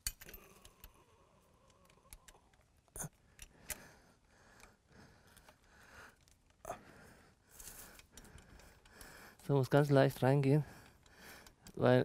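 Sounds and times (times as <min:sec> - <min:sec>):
metallic clicks of bolt handling: 0:00.0 - 0:01.0, 0:01.6 - 0:03.9.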